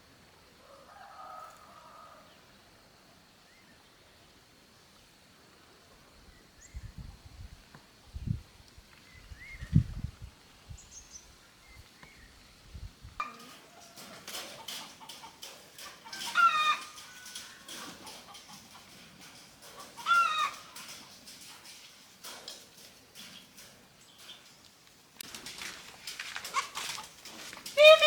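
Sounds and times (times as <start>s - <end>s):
chickens clucking: 13.2s - 24.5s, 26.2s - 28.0s
light clicks and rustling: 13.2s - 28.0s.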